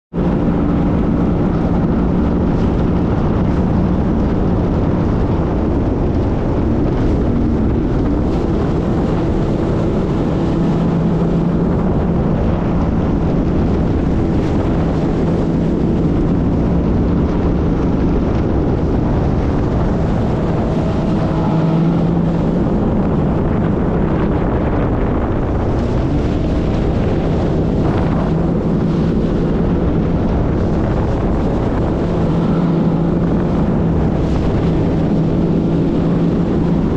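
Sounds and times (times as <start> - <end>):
jet ski engine running: 0.1 - 36.9
wind noise on microphone: 0.1 - 36.9.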